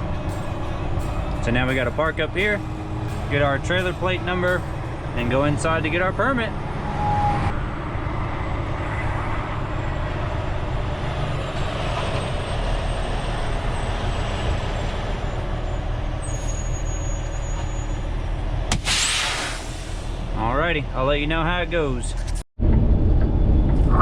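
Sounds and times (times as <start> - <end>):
diesel truck engine running: 0.0 - 6.9, 7.5 - 24.0
air brake hiss: 18.7 - 20.3.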